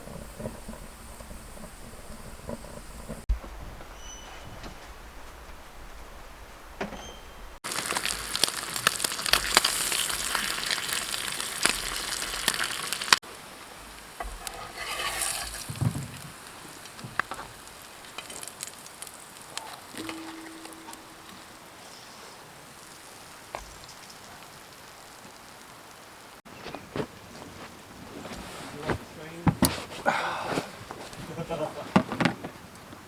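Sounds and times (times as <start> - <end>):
food sizzling in a frying pan: 7.6 - 26.3.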